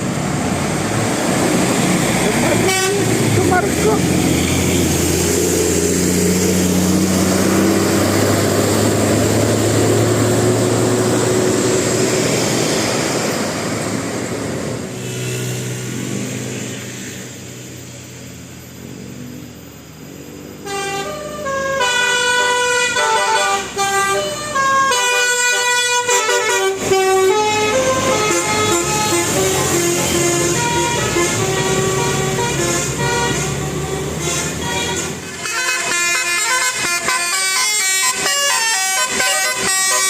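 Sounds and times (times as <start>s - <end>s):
bus engine and road noise: 0.0s - 40.0s
musical bus horn melody: 2.5s - 3.6s, 20.6s - 40.0s.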